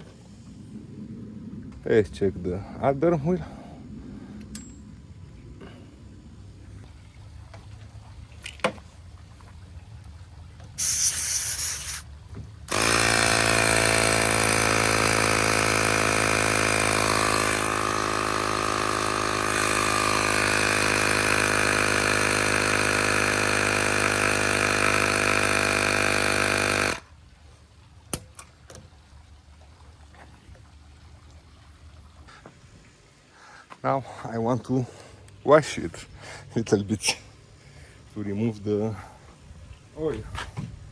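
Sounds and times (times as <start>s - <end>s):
air hiss from tyre valve: 10.8s - 12.1s
small compressor running: 10.8s - 27.1s.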